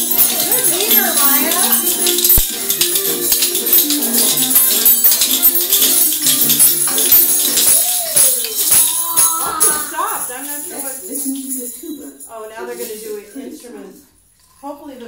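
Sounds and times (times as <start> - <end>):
simple stepping melody: 0.0 - 8.7
jingling hand percussion: 0.0 - 14.7.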